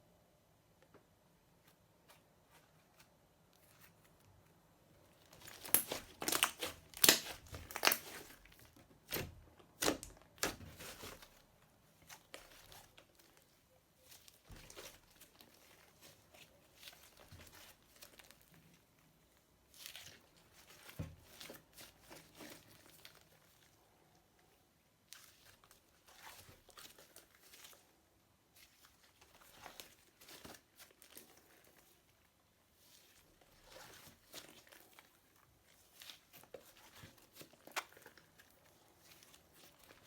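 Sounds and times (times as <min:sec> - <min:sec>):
slime crackling and popping: 0:05.3 - 0:11.4.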